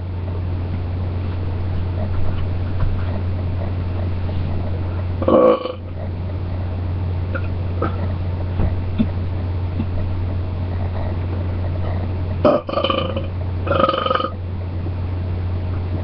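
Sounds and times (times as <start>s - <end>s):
low hum: 0.0s - 16.0s
person belching: 5.2s - 5.8s, 12.4s - 14.4s.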